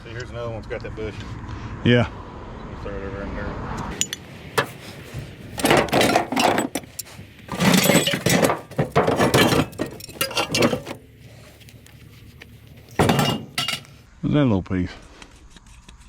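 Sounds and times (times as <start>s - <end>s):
scrap metal clattering: 4.0s - 11.6s, 12.8s - 14.0s.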